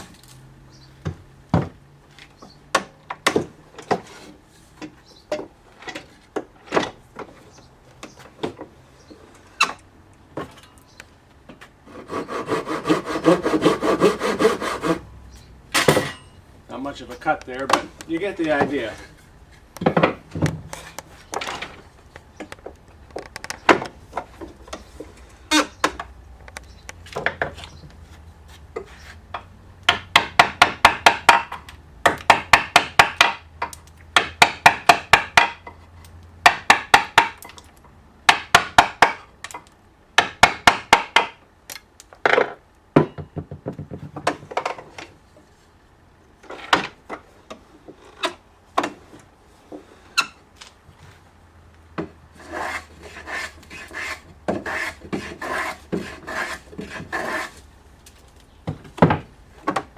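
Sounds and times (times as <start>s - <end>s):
hand tool strokes on wood: 11.9s - 15.0s, 52.3s - 57.6s
sharp knocks: 29.9s - 33.4s.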